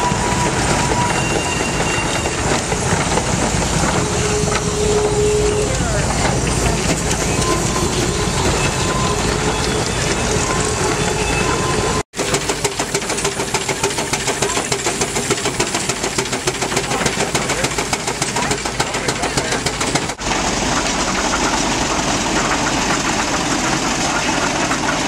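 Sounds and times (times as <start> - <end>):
heavy machinery clattering: 0.0 - 25.0
engine running with fast beat: 12.2 - 25.0.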